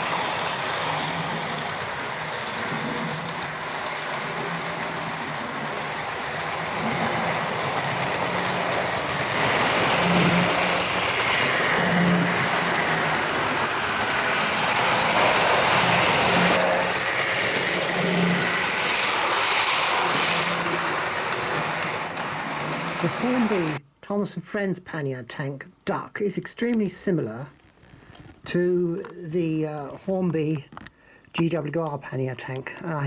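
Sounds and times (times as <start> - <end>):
model train motor hum: 0.0 - 23.8
wheel and rail noise: 0.0 - 23.8.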